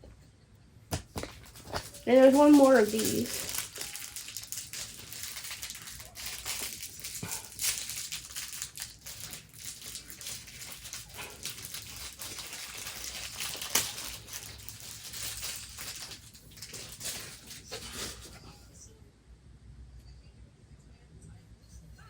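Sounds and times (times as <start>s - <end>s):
loud plastic crackle: 1.0s - 18.4s
plastic bags crinkling: 1.1s - 18.4s.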